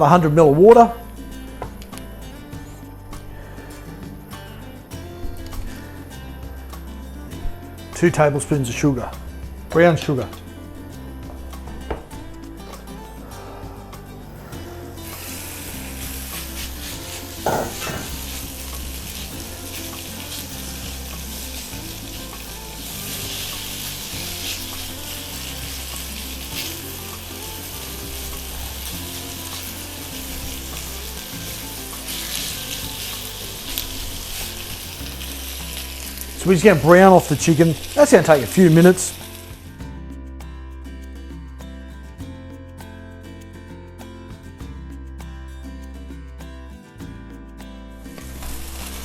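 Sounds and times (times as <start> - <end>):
background music with bass line: 0.0 - 49.0
chicken sizzling in hot oil: 14.7 - 39.6, 48.2 - 49.0.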